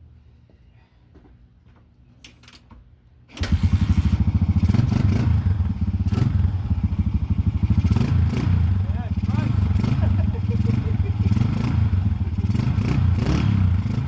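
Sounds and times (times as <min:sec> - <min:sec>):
motorcycle engine starting and running: 0:03.3 - 0:14.0.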